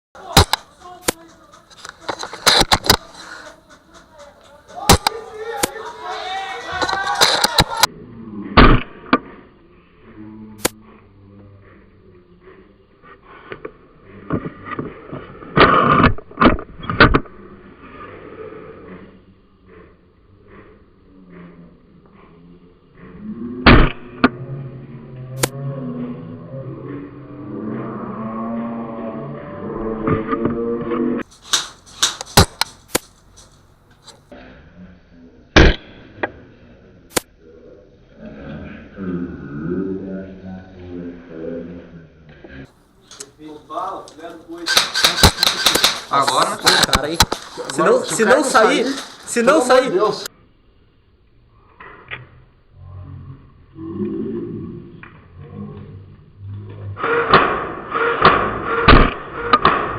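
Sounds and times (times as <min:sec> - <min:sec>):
scraping and rustling: 0:00.2 - 0:07.9, 0:31.2 - 0:34.3, 0:44.0 - 0:50.3.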